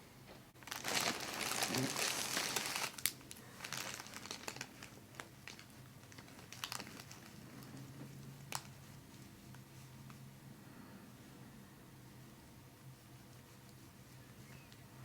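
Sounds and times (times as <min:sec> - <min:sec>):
paper crinkling: 0:00.6 - 0:09.3.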